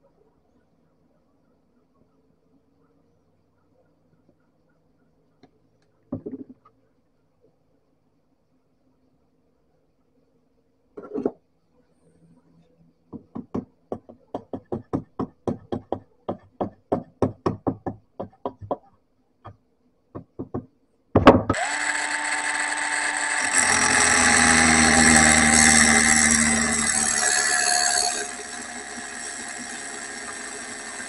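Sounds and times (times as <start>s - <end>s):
power tool whining: 21.5s - 31.0s.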